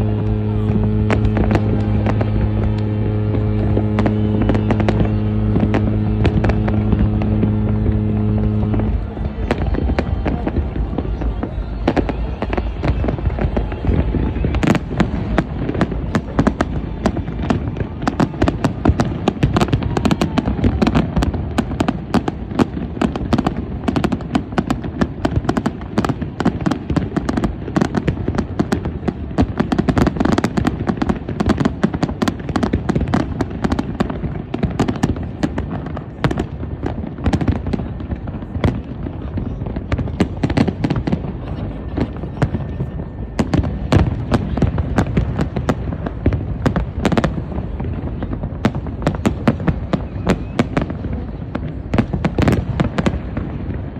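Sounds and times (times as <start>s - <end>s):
low rumble: 0.0s - 21.5s
fireworks crackling bangs: 0.0s - 53.9s.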